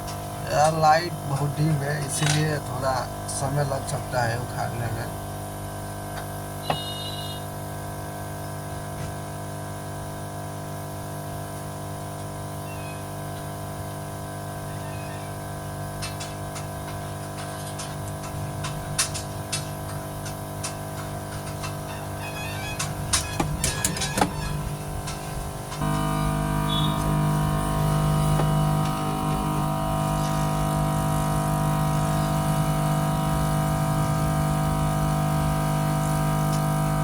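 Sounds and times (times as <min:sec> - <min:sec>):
hot-air station blowing: 0:00.0 - 0:08.3, 0:20.8 - 0:37.0.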